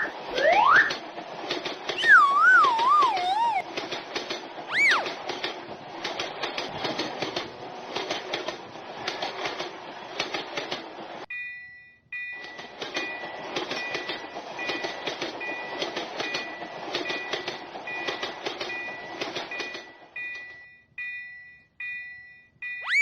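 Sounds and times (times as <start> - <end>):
train wheels rattling and clacking: 0.0 - 11.3, 12.3 - 20.7
railroad crossing bell ringing: 11.3 - 23.0.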